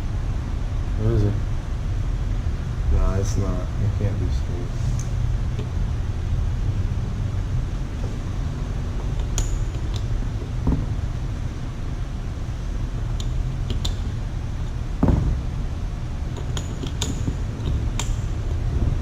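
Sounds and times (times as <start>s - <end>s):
steady low hum: 0.0s - 19.0s
metal gears clicking and clinking: 8.9s - 10.4s, 16.3s - 18.5s
dull knock: 10.6s - 11.0s, 15.0s - 15.5s.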